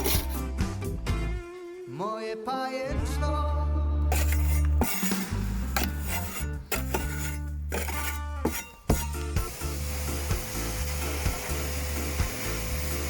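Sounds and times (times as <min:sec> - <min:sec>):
instrumental background music: 0:00.0 - 0:13.0
rasping hiss: 0:04.1 - 0:13.0.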